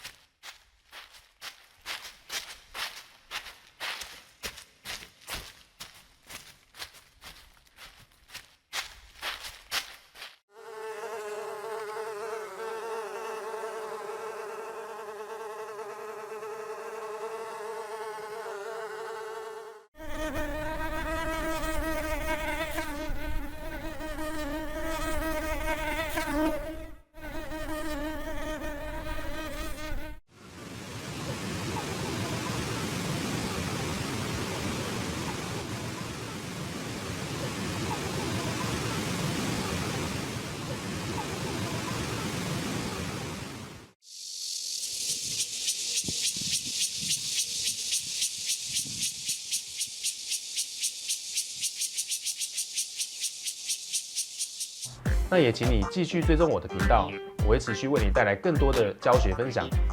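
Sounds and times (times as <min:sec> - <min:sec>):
insect wings buzzing: 0:10.2 - 0:30.2, 0:44.0 - 0:55.1.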